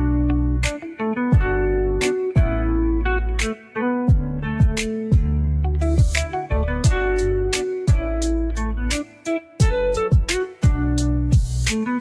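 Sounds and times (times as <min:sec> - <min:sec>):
steady percussive beat: 0:04.1 - 0:12.0.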